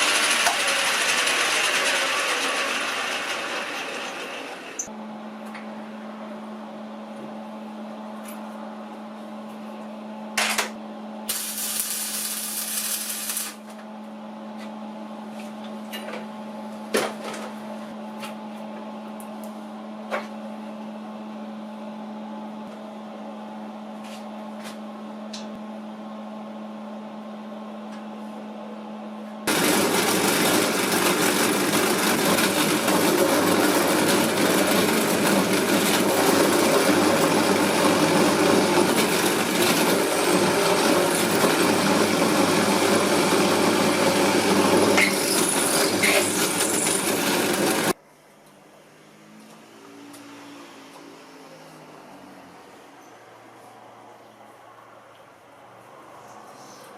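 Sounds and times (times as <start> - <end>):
electric machine humming: 0.0 - 5.2, 11.3 - 13.7, 29.5 - 48.0.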